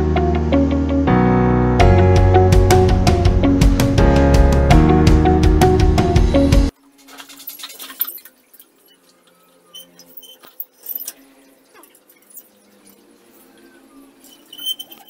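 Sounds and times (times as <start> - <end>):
music: 0.0 - 6.7
rope squeaking over a pulley: 9.6 - 11.3, 14.2 - 15.0.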